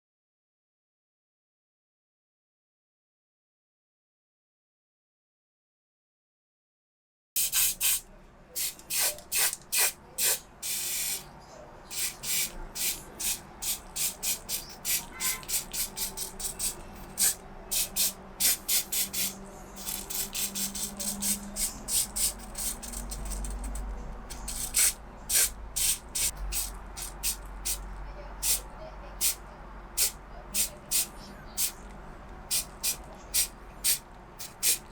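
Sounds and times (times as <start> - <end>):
spray paint hissing: 7.4 - 8.0, 8.6 - 11.3, 11.9 - 27.8, 28.4 - 28.6, 29.2 - 31.8, 32.5 - 34.9.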